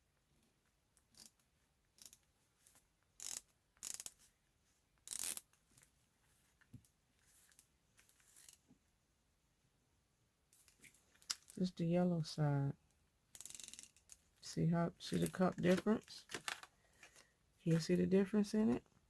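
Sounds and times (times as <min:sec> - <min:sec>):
correction tape scratching on paper: 0:03.2 - 0:04.3, 0:05.0 - 0:05.5.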